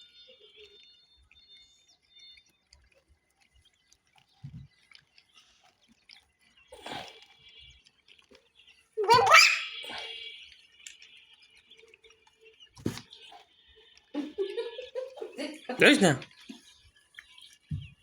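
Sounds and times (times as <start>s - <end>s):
soft taps and rustles: 2.8s - 6.0s, 12.7s - 13.4s, 17.2s - 18.0s.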